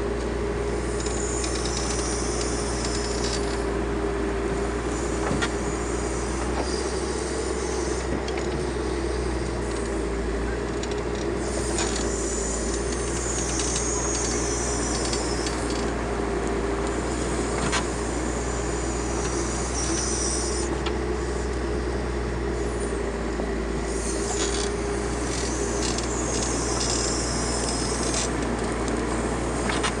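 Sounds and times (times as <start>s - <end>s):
backhoe diesel engine running: 0.0s - 30.0s
hissing and scraping: 0.8s - 3.7s, 4.6s - 10.0s, 11.4s - 16.0s, 16.9s - 21.5s, 23.8s - 30.0s.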